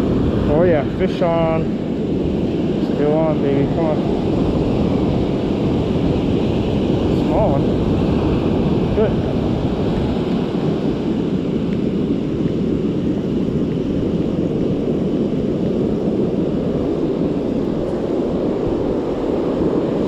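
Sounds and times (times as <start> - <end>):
ocean surf: 0.0 - 20.0
wind rumble on microphone: 0.0 - 20.0.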